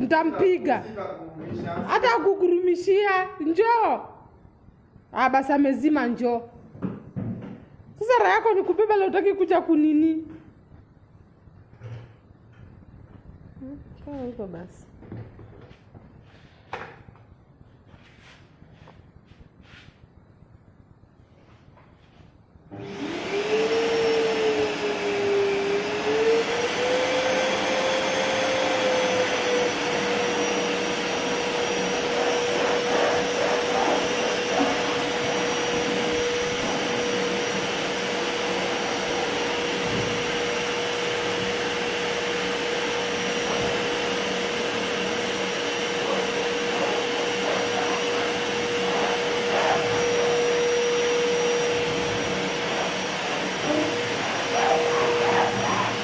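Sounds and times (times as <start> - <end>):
vacuum cleaner motor whine: 22.7 - 56.0.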